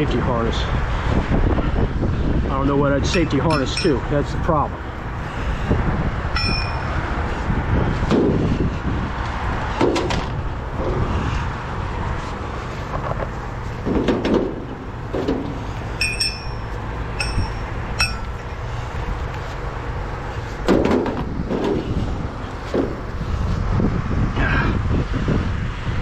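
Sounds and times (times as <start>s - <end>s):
short metallic pings: 3.1s - 4.1s, 6.4s - 7.1s, 16.0s - 18.4s
knocks and clanks on sheet metal: 13.8s - 15.6s, 20.6s - 21.9s.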